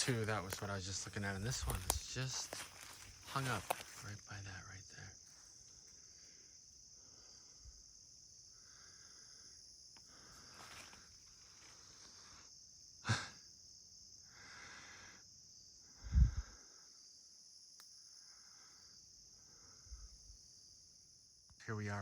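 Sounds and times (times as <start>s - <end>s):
footsteps on rough ground: 0.0s - 4.1s
crickets chirping: 0.0s - 22.0s
person breathing: 6.0s - 7.8s, 8.4s - 12.6s, 14.3s - 15.3s, 15.9s - 17.0s, 18.2s - 20.2s.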